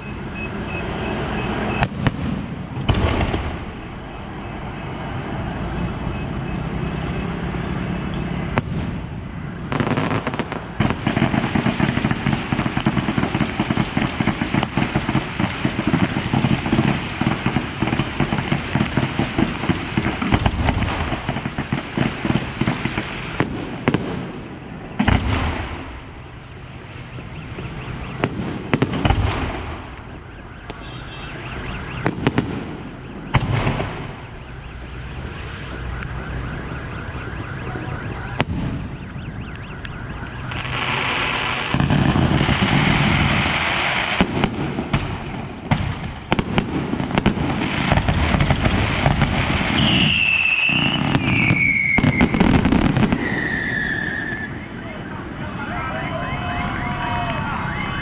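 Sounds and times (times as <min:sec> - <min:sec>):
fireworks bangs with echoes: 0:00.9 - 0:03.9, 0:08.4 - 0:26.2, 0:27.1 - 0:34.4, 0:38.3 - 0:39.0, 0:40.4 - 0:54.2
fireworks crackling: 0:06.0 - 0:36.6, 0:38.1 - 0:54.5
fireworks fizzing: 0:09.7 - 0:24.4, 0:40.5 - 0:54.4.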